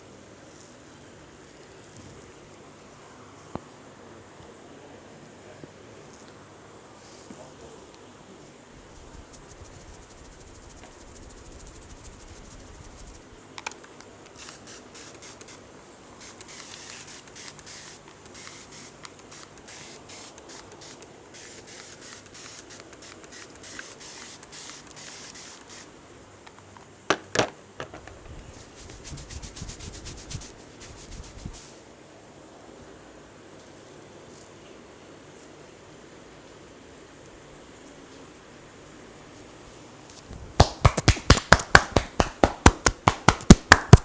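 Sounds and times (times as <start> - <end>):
hands rubbing hair and scalp: 8.8 - 13.3, 28.5 - 31.8, 38.8 - 44.0
loud sharp snaps: 40.4 - 44.0.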